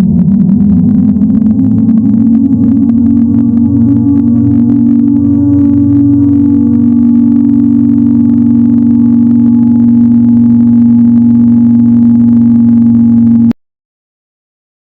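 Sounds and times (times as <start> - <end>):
low humming alarm tone: 0.0 - 13.6.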